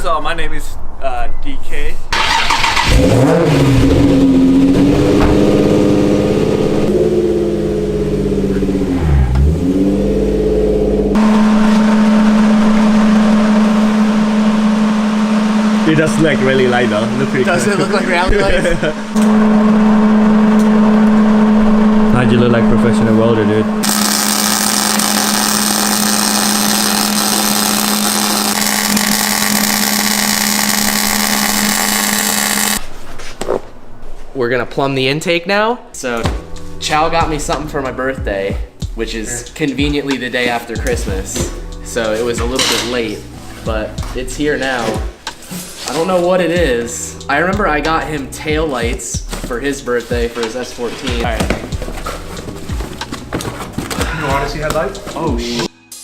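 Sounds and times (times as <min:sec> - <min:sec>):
car engine revving: 0:02.2 - 0:32.9
welding arc hissing: 0:23.8 - 0:32.8.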